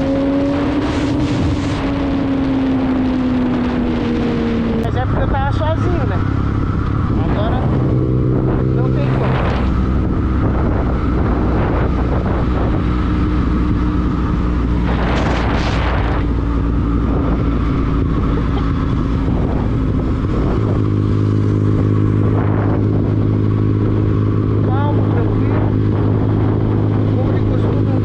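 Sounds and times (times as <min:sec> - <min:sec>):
motorcycle exhaust rumbling: 0:00.0 - 0:28.0.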